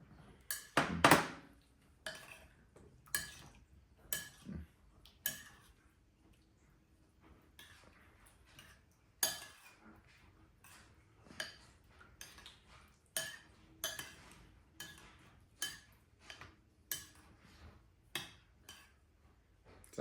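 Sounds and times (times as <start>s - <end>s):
spoons clinking against bowls: 0.4s - 1.3s, 2.1s - 2.5s, 3.1s - 4.5s, 5.2s - 5.8s, 8.5s - 9.8s, 10.6s - 17.3s, 18.2s - 19.0s.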